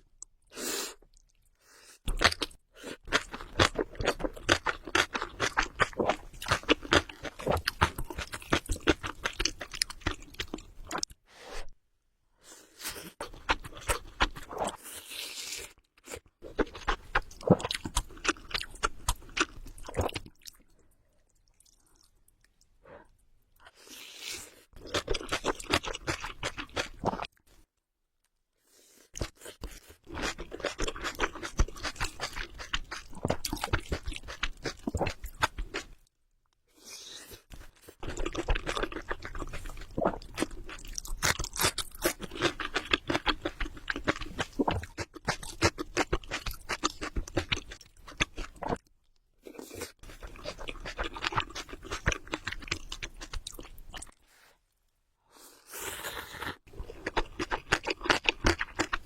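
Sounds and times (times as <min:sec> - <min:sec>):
chewing noodles: 0:02.1 - 0:11.1, 0:23.8 - 0:27.4, 0:29.2 - 0:36.0, 0:37.3 - 0:48.9, 0:49.5 - 0:54.2, 0:55.7 - 0:59.0.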